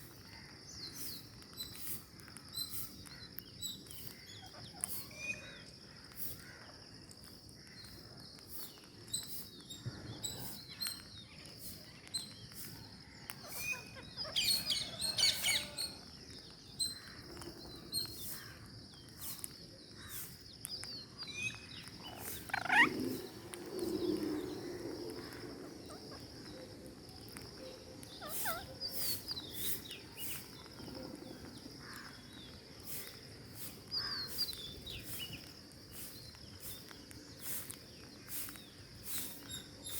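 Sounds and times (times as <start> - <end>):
parrots squawking: 22.1 - 23.0, 28.2 - 29.1.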